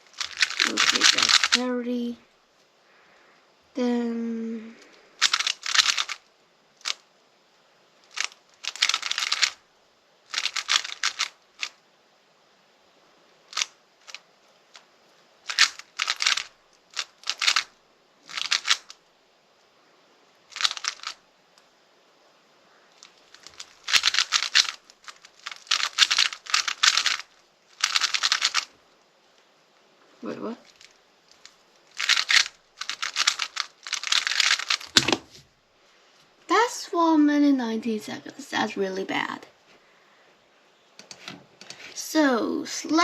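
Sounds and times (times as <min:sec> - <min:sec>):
plastic cube clicking: 0:00.1 - 0:01.6, 0:05.2 - 0:06.2, 0:08.0 - 0:09.6, 0:10.3 - 0:11.8, 0:13.5 - 0:14.8, 0:15.4 - 0:17.7, 0:18.3 - 0:19.0, 0:20.5 - 0:21.2, 0:23.0 - 0:28.7, 0:30.7 - 0:35.4.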